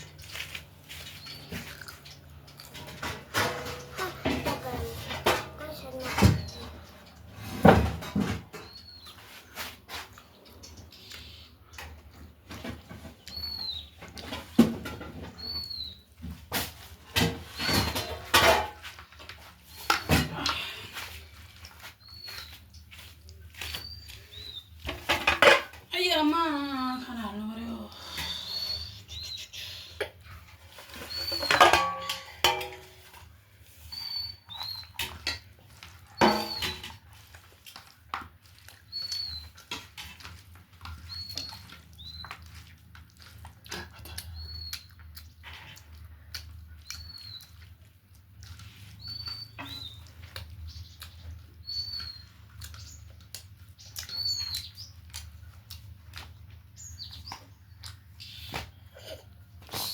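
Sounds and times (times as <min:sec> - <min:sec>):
small bird chirping: 0:13.2 - 0:14.3, 0:28.0 - 0:30.0, 0:33.8 - 0:35.1, 0:38.8 - 0:39.7, 0:44.2 - 0:45.3, 0:46.8 - 0:47.8, 0:48.9 - 0:53.2, 0:53.8 - 0:55.4, 0:56.7 - 0:58.9.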